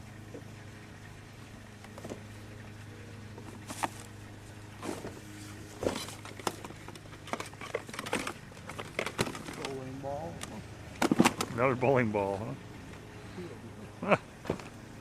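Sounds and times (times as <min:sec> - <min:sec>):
steady low hum: 0:00.0 - 0:15.0
junk clattering and rattling: 0:04.8 - 0:09.8, 0:10.9 - 0:11.6, 0:14.4 - 0:14.8.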